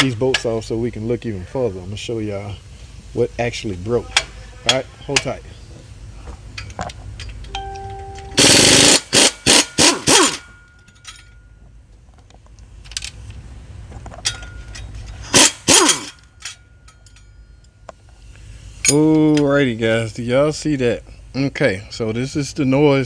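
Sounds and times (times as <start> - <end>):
impact wrench hammering: 8.1 - 11.4, 14.3 - 17.3.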